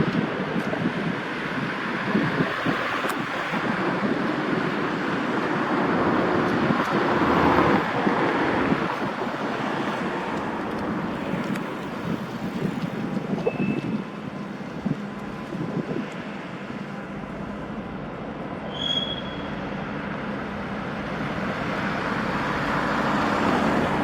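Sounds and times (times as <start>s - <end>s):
diesel locomotive passing: 0.0s - 13.3s, 13.9s - 24.0s
high wheel squeal: 18.6s - 19.6s.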